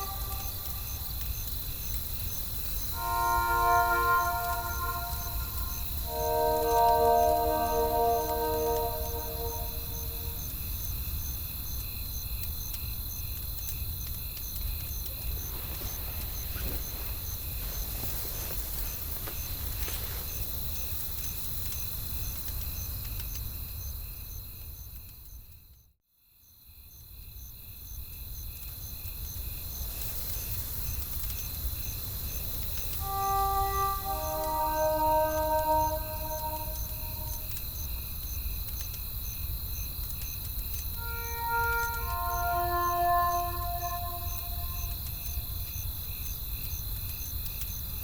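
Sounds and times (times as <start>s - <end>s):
crickets chirping: 2.8s - 10.6s, 33.0s - 37.8s, 41.0s - 45.3s.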